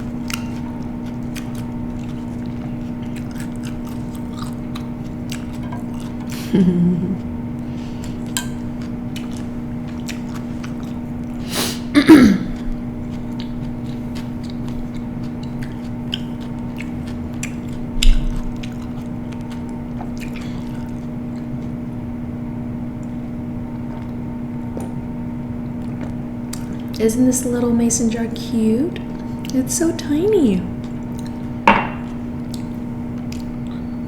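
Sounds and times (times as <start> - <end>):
wet chewing: 0.0 - 21.8, 25.6 - 27.0, 30.7 - 34.0
steady low hum: 0.0 - 34.0.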